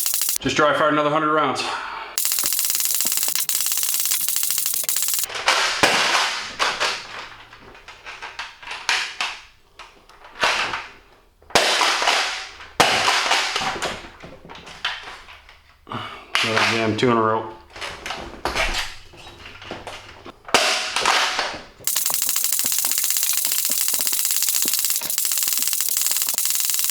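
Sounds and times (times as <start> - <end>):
toy blaster mechanical clicks: 0.0 - 0.4, 2.2 - 5.3, 21.9 - 26.9
toy blaster firing cracks: 2.2 - 5.3, 21.9 - 26.9.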